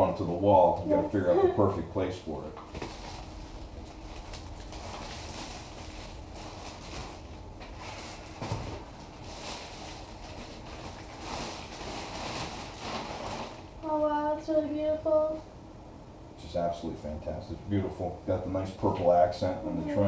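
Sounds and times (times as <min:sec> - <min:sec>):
packaging rustling: 0:02.7 - 0:13.7.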